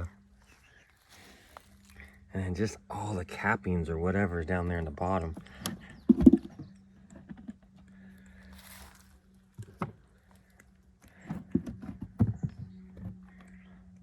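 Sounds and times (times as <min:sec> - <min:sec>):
steady low hum: 0:00.0 - 0:14.0
knocks and clatter of hive frames: 0:05.2 - 0:07.8, 0:11.1 - 0:13.6.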